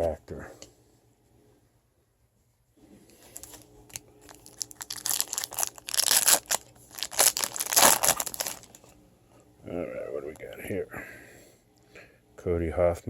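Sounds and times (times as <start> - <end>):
foil wrapper tearing and crinkling: 3.4 - 8.9.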